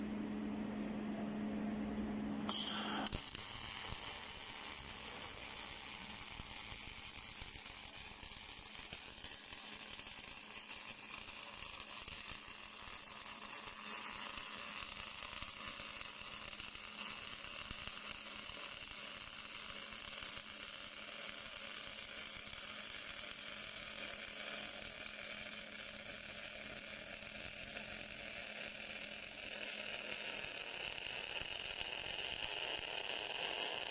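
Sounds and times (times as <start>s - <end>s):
steady low hum: 0.0s - 7.2s
welding arc hissing: 2.5s - 33.9s.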